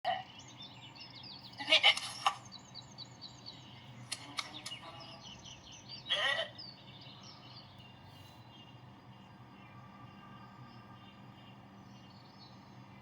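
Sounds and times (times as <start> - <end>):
birds chirping faintly: 0.1 - 13.0
sharp clicks: 4.1 - 4.9.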